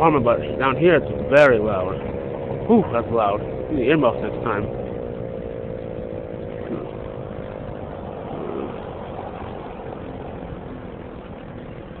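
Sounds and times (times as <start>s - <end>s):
low vehicle rumble: 0.0s - 12.0s
tornado siren tone: 4.4s - 12.0s.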